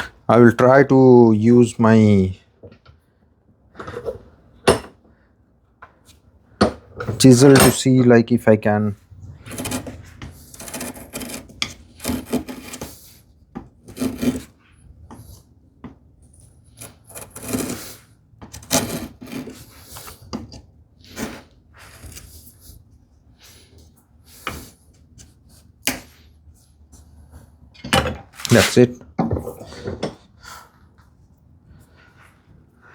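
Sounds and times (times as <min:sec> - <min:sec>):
hand tool scraping wood: 0:09.4 - 0:15.3, 0:16.6 - 0:22.6, 0:28.4 - 0:28.9.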